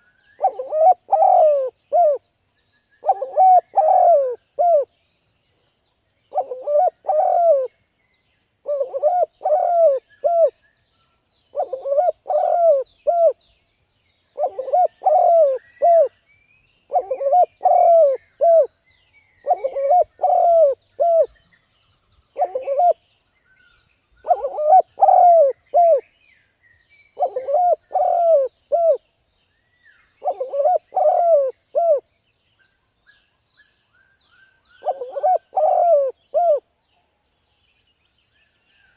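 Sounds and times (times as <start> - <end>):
small birds twittering: 0.0 - 38.9
dove cooing: 0.4 - 2.2, 3.0 - 4.9, 6.3 - 7.7, 8.6 - 10.6, 11.5 - 13.4, 14.4 - 16.1, 16.9 - 18.7, 19.4 - 21.4, 22.4 - 23.0, 24.2 - 26.0, 27.2 - 29.0, 30.2 - 32.0, 34.8 - 36.6.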